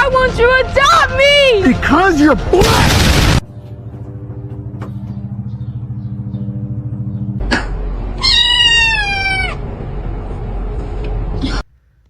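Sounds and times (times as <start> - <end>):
cat meowing: 8.2 - 9.6.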